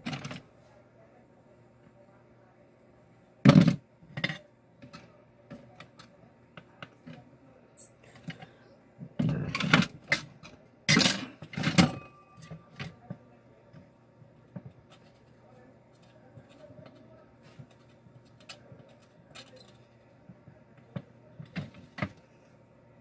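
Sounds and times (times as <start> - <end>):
small tools clicking and tapping: 16.0 - 19.8.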